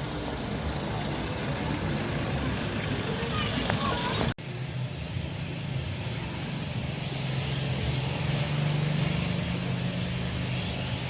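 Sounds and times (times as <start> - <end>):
engine drone: 0.0 - 11.0.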